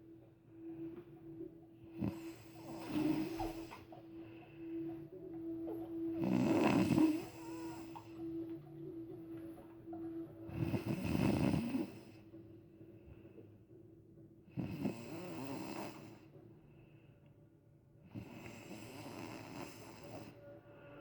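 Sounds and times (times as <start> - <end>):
rasping snores: 1.9 - 3.9, 6.2 - 8.2, 10.5 - 12.2, 14.6 - 16.3, 18.1 - 20.4.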